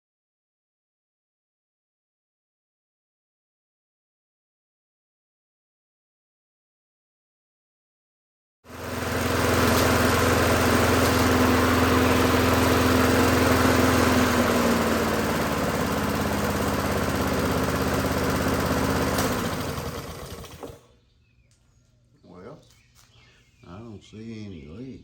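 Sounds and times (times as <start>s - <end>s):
lawn mower engine running: 8.7s - 20.9s.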